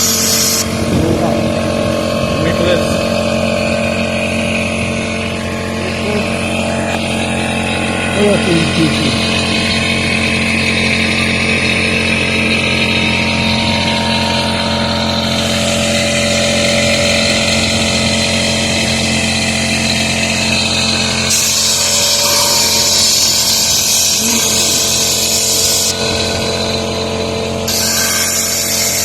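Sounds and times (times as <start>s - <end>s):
air compressor humming: 0.0s - 29.0s
compressed air hissing from nozzle: 20.8s - 25.9s.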